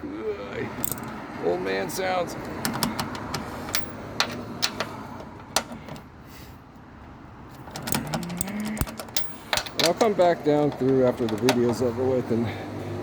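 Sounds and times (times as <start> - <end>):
metallic clicks of hand tools: 7.6 - 10.2.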